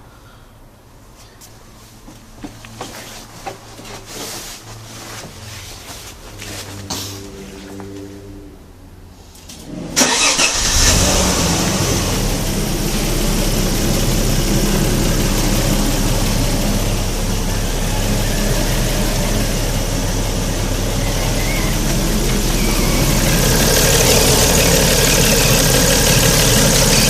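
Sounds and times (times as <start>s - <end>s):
car engine starting and idling: 9.4s - 27.0s.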